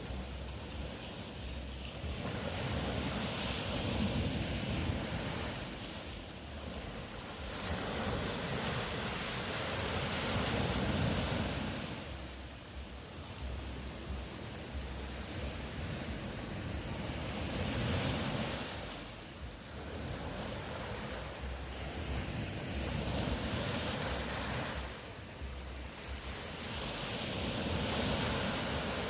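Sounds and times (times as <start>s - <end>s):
ocean waves washing ashore: 0.0s - 29.0s.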